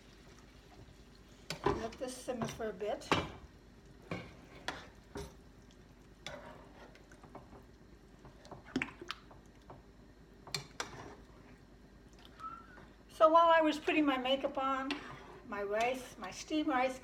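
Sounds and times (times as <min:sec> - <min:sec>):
spoon stirring sauce in pot: 0:04.0 - 0:09.8, 0:10.4 - 0:11.4.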